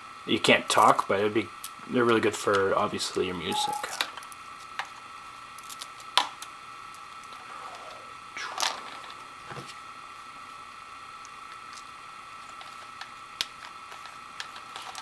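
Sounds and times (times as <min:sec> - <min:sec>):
faint high whine: 0:03.3 - 0:04.2, 0:07.2 - 0:09.3.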